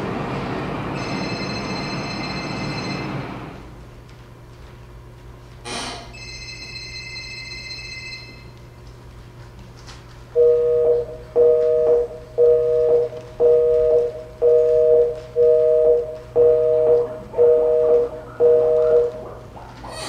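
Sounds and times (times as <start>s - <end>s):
telephone busy signal beeps: 10.4s - 19.2s.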